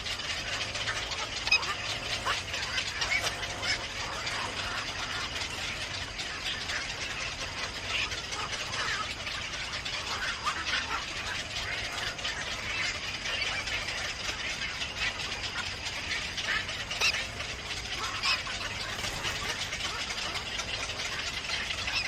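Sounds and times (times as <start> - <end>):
small birds chirping: 0.0 - 22.0.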